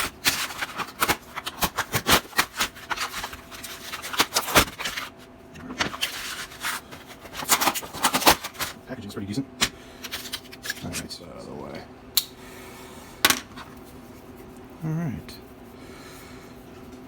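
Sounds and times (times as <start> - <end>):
packaging rustling and scraping: 0.0 - 8.8, 10.0 - 11.1.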